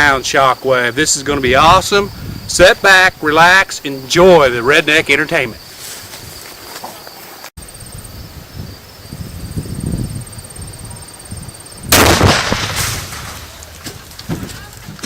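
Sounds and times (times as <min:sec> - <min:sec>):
loud explosion with rumbling tail: 0:11.9 - 0:13.6.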